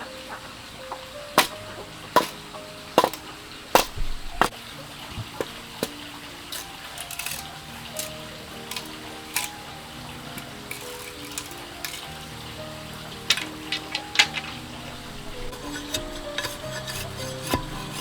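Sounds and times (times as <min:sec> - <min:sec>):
soft background music: 0:00.0 - 0:18.0
blade chopping: 0:01.4 - 0:02.4, 0:03.0 - 0:04.6, 0:05.4 - 0:09.6, 0:15.3 - 0:18.0.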